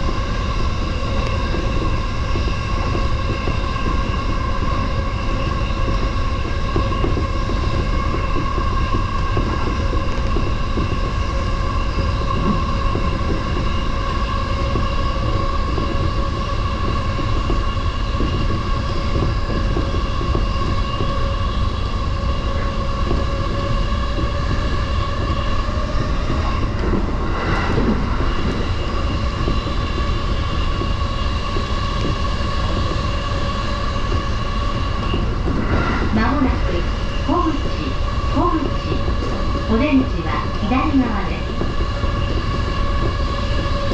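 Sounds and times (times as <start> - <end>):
train wheels rumbling on rails: 0.0 - 43.9.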